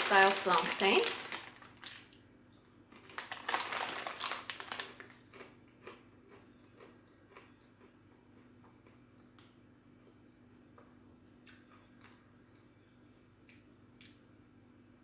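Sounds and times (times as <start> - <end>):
chips being bitten and chewed: 2.9 - 10.2.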